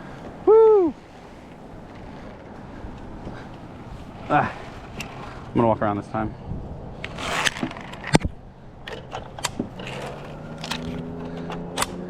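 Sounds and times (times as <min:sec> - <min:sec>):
harness gear clicks and knocks: 0:07.0 - 0:12.0.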